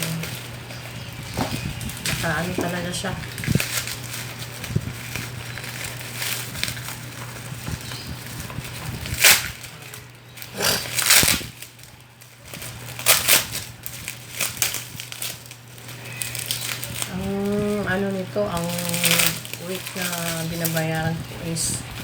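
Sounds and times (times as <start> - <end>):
packaging crinkling: 0.0 - 22.0
packaging rustling: 0.0 - 22.0
steady low hum: 0.0 - 22.0.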